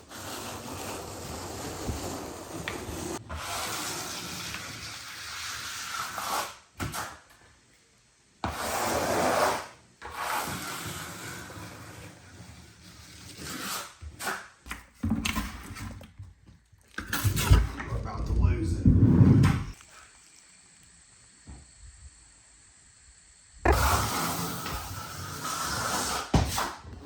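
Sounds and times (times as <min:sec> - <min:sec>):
scraping and rubbing on floor: 0:00.0 - 0:07.2, 0:08.4 - 0:16.1, 0:17.0 - 0:20.1, 0:23.7 - 0:26.8.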